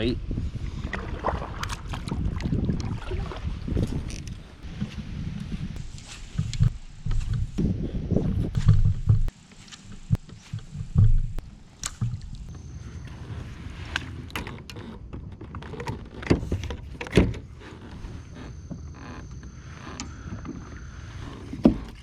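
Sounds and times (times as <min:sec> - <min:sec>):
steady low rumble: 0:00.2 - 0:14.4.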